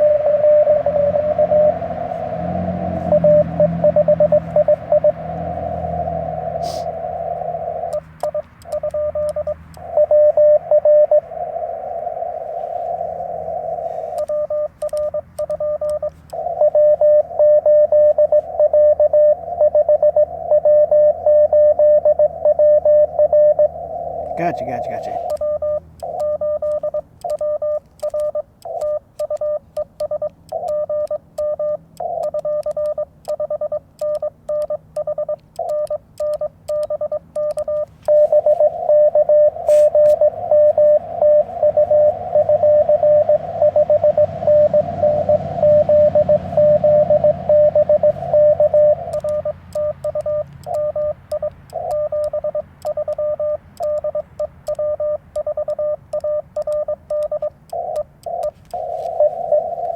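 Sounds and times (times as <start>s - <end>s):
radio static: 0.0s - 26.8s, 37.8s - 54.0s, 56.8s - 59.9s
morse code beeps: 0.0s - 59.9s.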